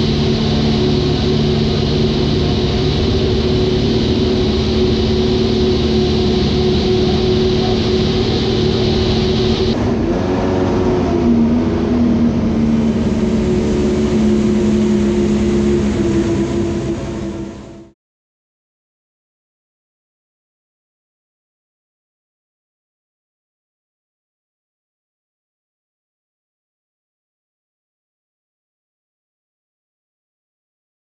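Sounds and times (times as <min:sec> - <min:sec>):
racing motorcycle engine revving: 0:00.0 - 0:17.9.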